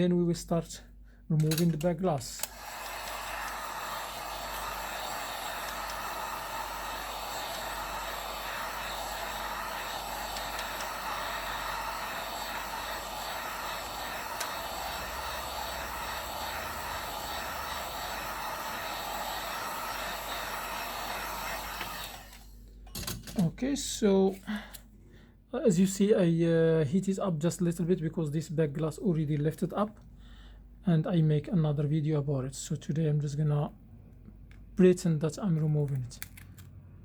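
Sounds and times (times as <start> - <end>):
heat gun blowing hot air: 2.4 - 22.6.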